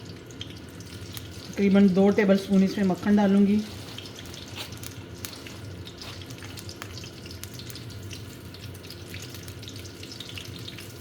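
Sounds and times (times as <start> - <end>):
butter sizzling in hot oil: 0.0 - 11.0
small crackles: 3.6 - 11.0.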